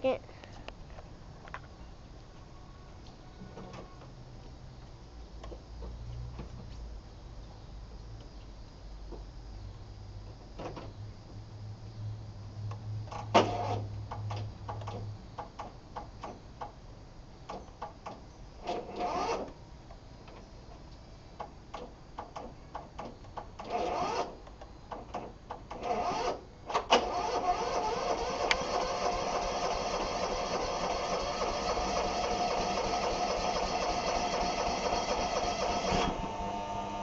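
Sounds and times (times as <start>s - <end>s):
electric starter cranking: 18.6s - 19.5s, 23.6s - 24.4s, 25.7s - 37.0s
mower engine running: 27.0s - 37.0s.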